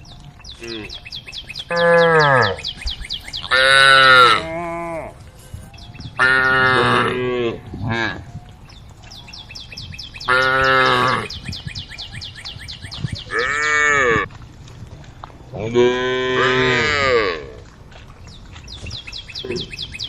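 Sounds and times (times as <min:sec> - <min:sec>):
cows mooing: 0:01.6 - 0:02.7, 0:03.4 - 0:05.2, 0:06.2 - 0:08.3, 0:10.2 - 0:11.4, 0:13.3 - 0:14.3, 0:15.6 - 0:17.7.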